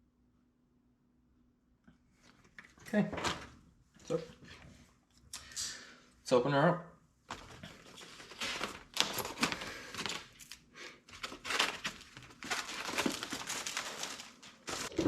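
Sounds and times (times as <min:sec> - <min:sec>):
cardboard packaging rustling: 0:07.3 - 0:15.0.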